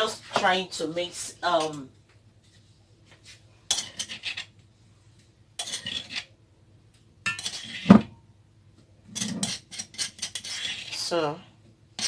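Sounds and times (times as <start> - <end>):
utensil scraping a bowl: 3.7 - 4.5, 5.6 - 6.3, 7.3 - 8.1, 9.2 - 11.2.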